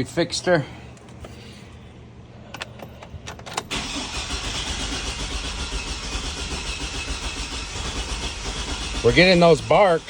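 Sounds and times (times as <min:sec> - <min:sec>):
starter motor cranking engine: 0:03.6 - 0:10.0.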